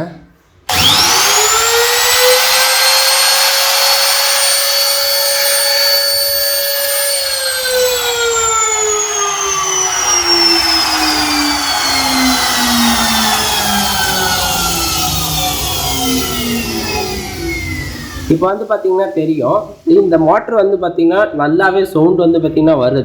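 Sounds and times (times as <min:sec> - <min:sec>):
router motor whine: 0:00.7 - 0:18.8
cooling fan rush: 0:00.7 - 0:19.9.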